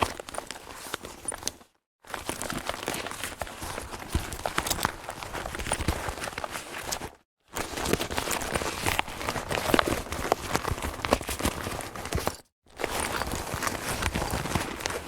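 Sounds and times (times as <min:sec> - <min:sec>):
leather bag rustling: 0:00.0 - 0:15.0.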